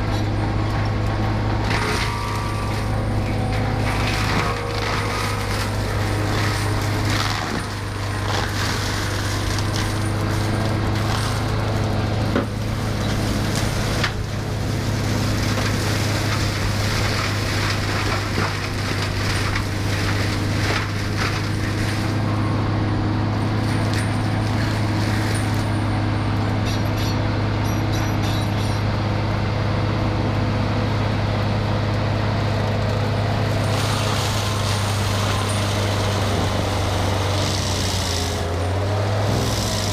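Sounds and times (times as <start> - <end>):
wood cracking and splintering: 0.0 - 22.6, 32.5 - 39.9
heavy machine engine running: 0.0 - 39.9.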